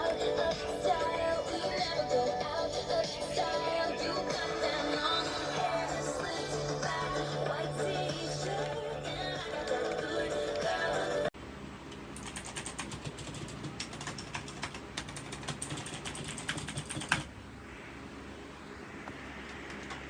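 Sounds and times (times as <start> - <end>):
music: 0.0 - 11.3
mechanical keyboard typing: 12.2 - 17.3.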